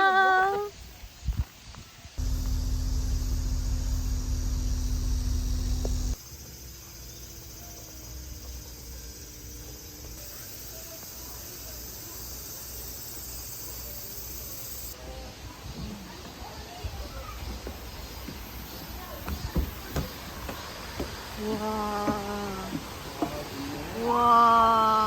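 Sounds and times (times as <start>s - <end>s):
loud low rumble with hum: 2.2s - 6.2s
insects buzzing: 2.2s - 15.0s.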